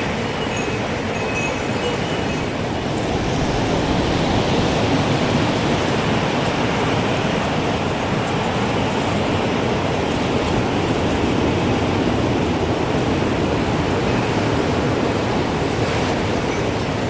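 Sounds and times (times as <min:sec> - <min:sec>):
wind rushing: 0:02.2 - 0:08.2.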